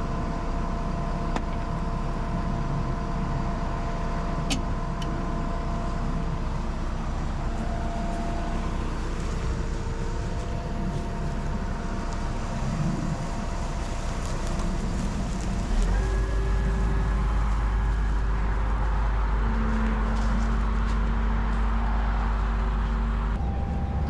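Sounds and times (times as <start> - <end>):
combine harvester running: 0.0 - 24.0.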